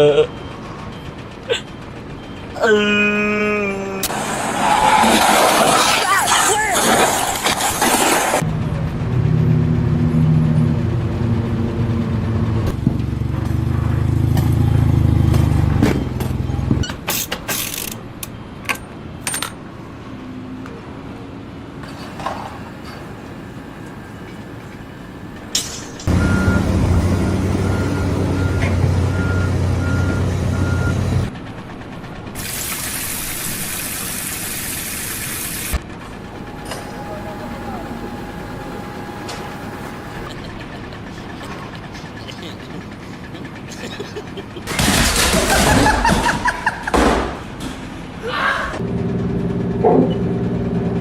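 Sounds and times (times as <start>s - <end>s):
heavy vehicle engines running: 0.0s - 51.0s
reversing alarm beeping: 0.2s - 2.6s, 26.1s - 31.3s, 36.1s - 40.3s
loud hiss: 32.4s - 35.8s.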